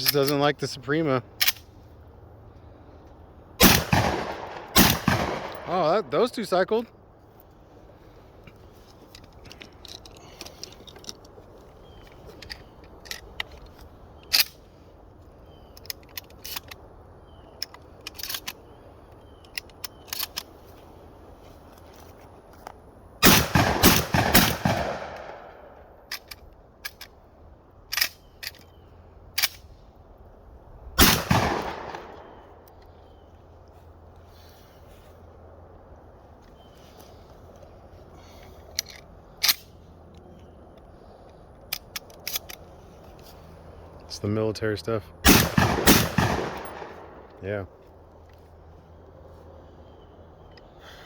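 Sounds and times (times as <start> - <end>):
gunshots echoing: 3.6 - 6.1, 23.2 - 25.8, 31.0 - 32.5, 45.2 - 47.3.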